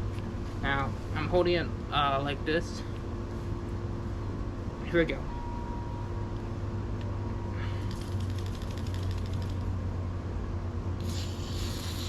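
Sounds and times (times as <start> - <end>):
steady low hum: 0.0 - 12.0
rapid ticking: 7.9 - 9.7
aerosol can spraying hiss: 11.0 - 12.0.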